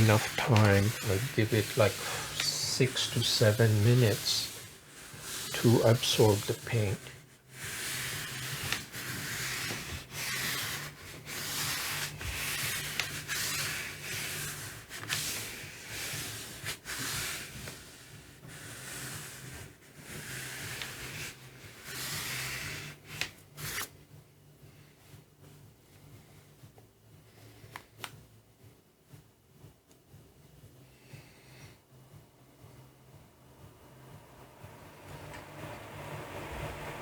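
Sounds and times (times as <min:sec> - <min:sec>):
dry scratchy rubbing on paper: 0:00.0 - 0:23.9.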